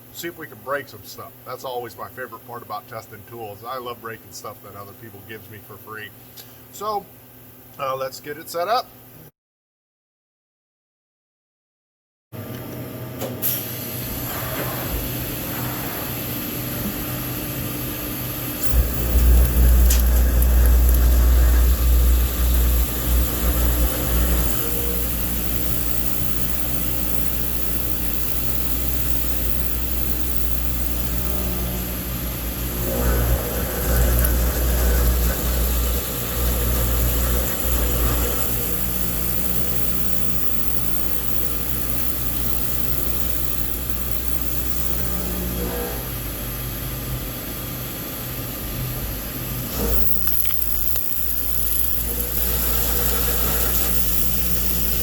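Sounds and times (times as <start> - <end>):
machine hum: 13.8 - 55.0
low rumbling: 18.6 - 27.6.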